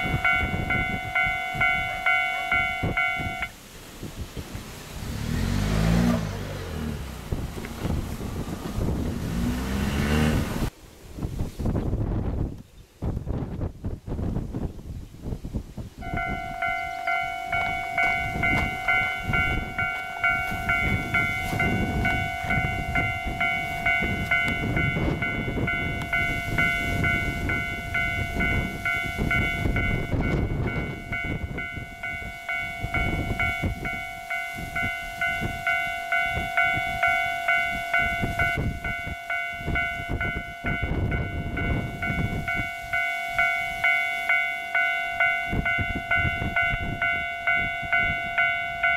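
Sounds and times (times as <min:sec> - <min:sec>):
level-crossing warning bell: 0:00.0 - 0:03.7, 0:16.0 - 0:48.9
wind rumble: 0:00.0 - 0:48.9.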